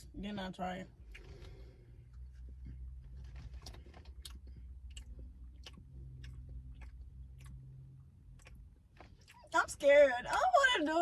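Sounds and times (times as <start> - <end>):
low steady hum: 0.0 - 11.0
faint chewing: 1.0 - 9.6.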